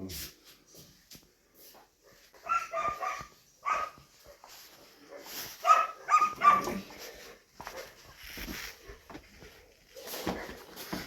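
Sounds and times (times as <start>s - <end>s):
dog barking: 2.0s - 4.3s, 5.0s - 6.9s, 7.6s - 8.0s.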